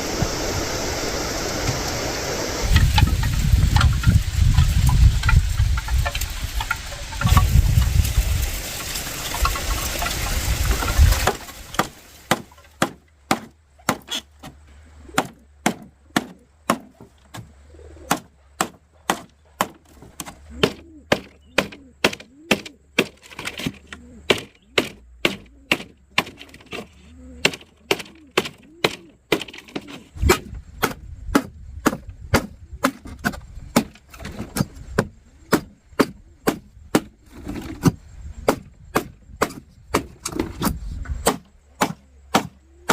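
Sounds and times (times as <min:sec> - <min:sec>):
loud rushing noise: 0:00.0 - 0:04.9
blade chopping wood: 0:08.8 - 0:42.9.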